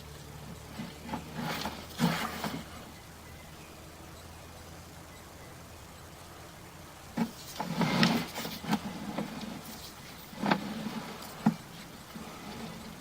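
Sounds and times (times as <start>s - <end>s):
cable knocking and scraping: 0.6s - 2.8s, 7.2s - 13.0s.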